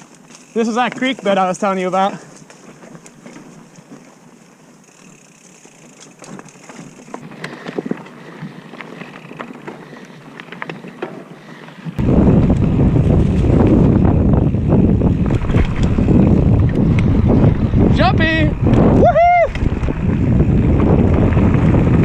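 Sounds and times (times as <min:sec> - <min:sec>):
bike tyres rolling over rocks: 0:00.0 - 0:22.0
wind buffeting microphone: 0:12.0 - 0:22.0.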